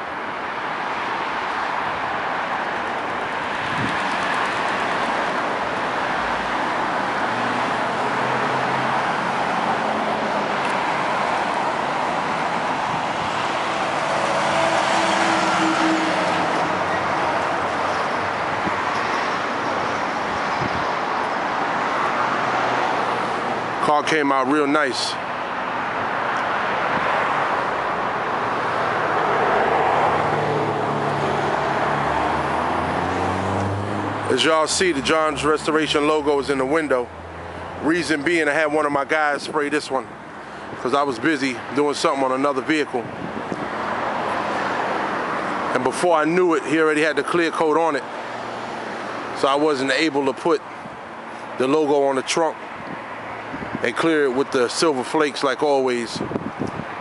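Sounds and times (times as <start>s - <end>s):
road traffic passing: 0.0s - 57.0s.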